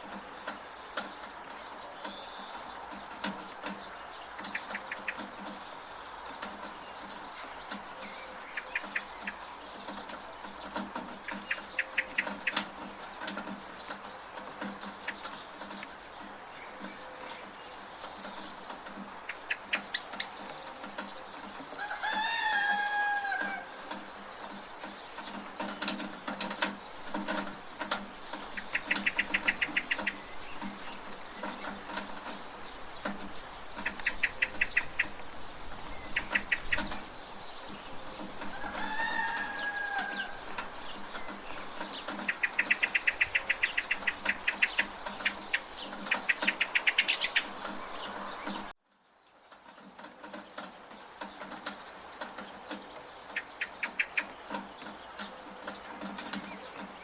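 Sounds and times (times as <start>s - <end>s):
rattling bird chatter: 0.0s - 48.7s, 49.5s - 57.0s
steady rain: 0.0s - 57.0s
rooster crowing: 21.8s - 23.9s, 38.5s - 40.5s.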